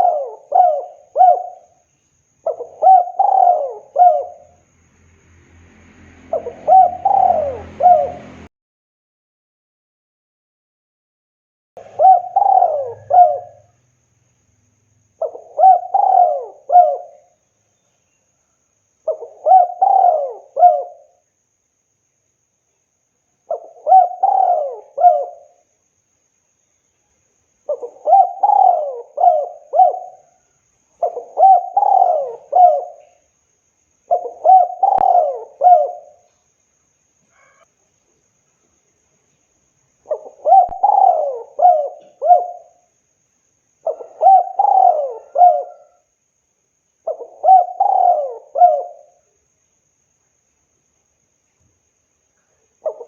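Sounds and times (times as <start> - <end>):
dove cooing: 0.0 - 1.8, 2.4 - 4.6, 6.3 - 8.5, 11.8 - 13.8, 15.2 - 17.4, 19.1 - 21.2, 23.5 - 25.6, 27.7 - 30.4, 31.0 - 33.2, 34.1 - 36.3, 40.1 - 42.8, 43.8 - 46.1, 47.0 - 49.2.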